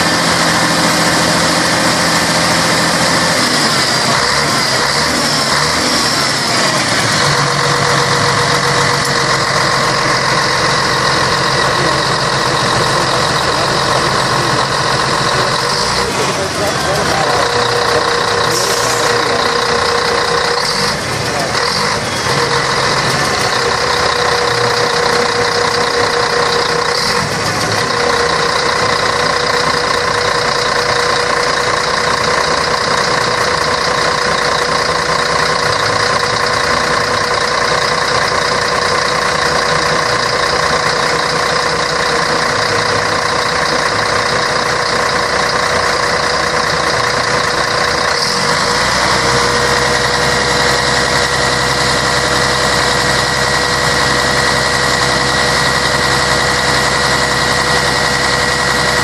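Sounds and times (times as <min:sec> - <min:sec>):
steady whine: 0:00.0 - 0:21.6
diesel bus engine running: 0:00.0 - 0:59.0.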